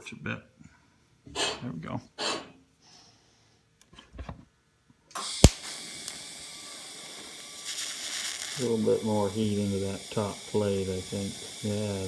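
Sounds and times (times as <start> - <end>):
welding arc crack: 5.2 - 12.0
welding arc hissing: 5.2 - 12.0.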